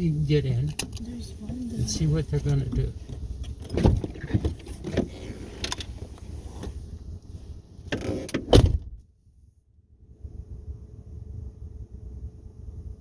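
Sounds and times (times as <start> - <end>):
car door clicks and knocks: 2.5 - 5.9, 7.9 - 9.0
car door shutting with thud: 2.7 - 5.9, 7.9 - 9.0
faint steady hum: 9.2 - 13.0.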